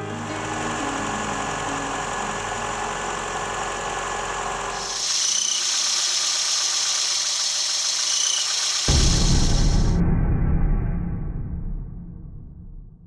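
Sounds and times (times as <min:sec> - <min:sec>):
car engine idling: 0:00.0 - 0:10.0
loud high-pitched hiss: 0:00.0 - 0:10.0.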